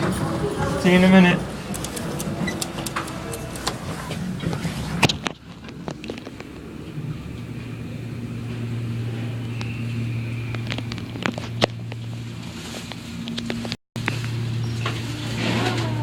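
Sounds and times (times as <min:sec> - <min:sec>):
low machine hum: 0:00.0 - 0:16.0
sharp clicks: 0:01.7 - 0:03.8.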